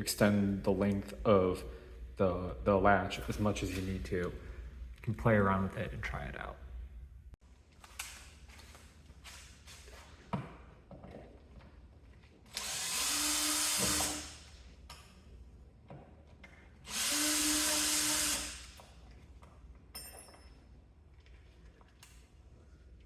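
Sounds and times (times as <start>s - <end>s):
power drill whining: 12.5s - 14.3s.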